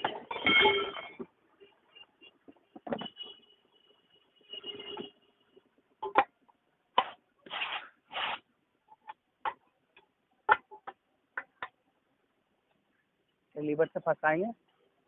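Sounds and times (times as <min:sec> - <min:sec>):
short scraping rubs: 0:07.0 - 0:08.5.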